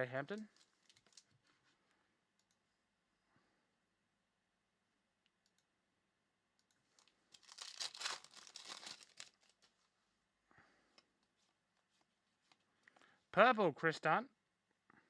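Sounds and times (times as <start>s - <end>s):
foil wrapper tearing and crinkling: 7.0s - 9.7s.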